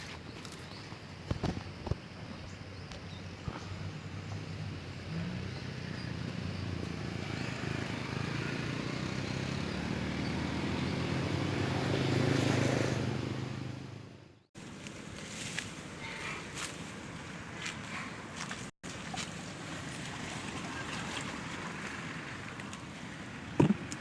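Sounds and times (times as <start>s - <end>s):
motor engine droning: 3.4s - 14.4s.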